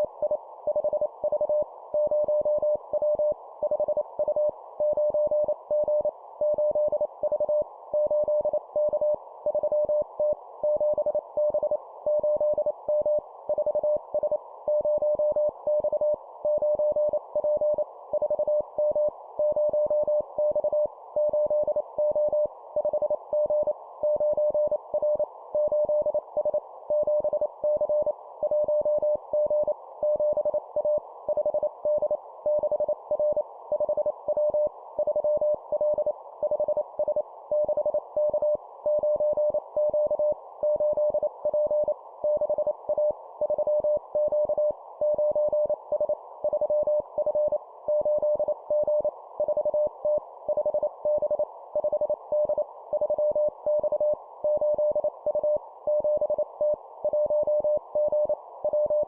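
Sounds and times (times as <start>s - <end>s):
morse code beeps: 37.6s - 59.0s.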